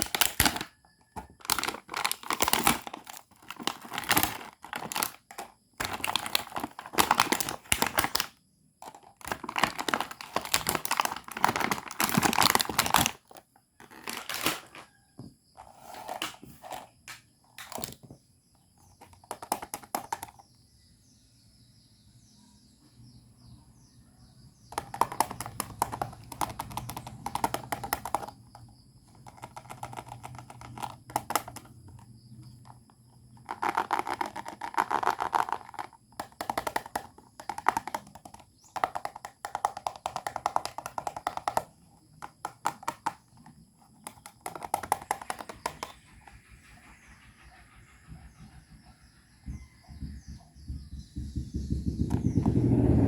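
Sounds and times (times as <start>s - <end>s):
plastic toy pieces clicking: 0.0s - 14.8s, 16.0s - 18.0s, 19.0s - 20.4s, 24.7s - 46.2s.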